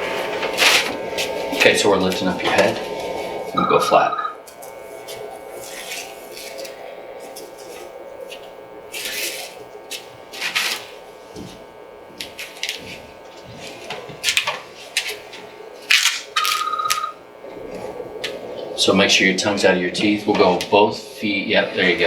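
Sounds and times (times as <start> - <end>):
faint room hum: 0.0 - 22.0
steady high tone: 1.9 - 4.5, 16.4 - 17.6.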